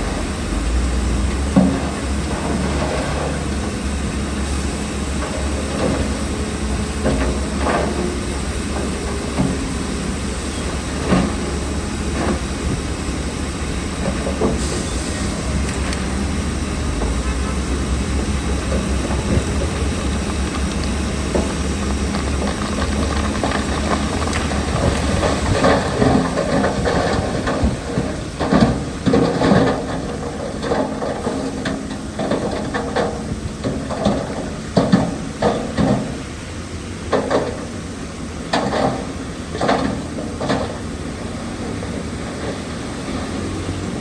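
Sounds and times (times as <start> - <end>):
heavy machinery engine rumble: 0.0 - 44.0
metal clanks and knocks: 18.6 - 36.2.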